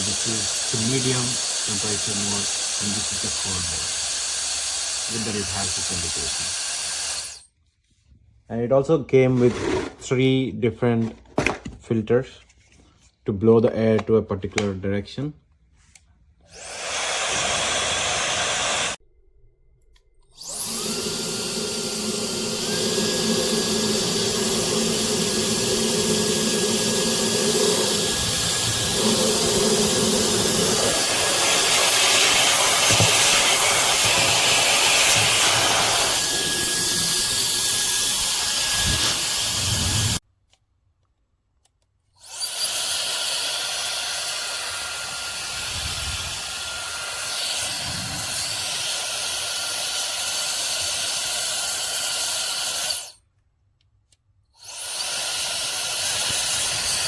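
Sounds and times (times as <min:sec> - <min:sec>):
hair dryer blowing: 0:00.0 - 0:07.4, 0:16.5 - 0:19.0, 0:20.4 - 0:40.2, 0:42.2 - 0:53.1, 0:54.6 - 0:57.0.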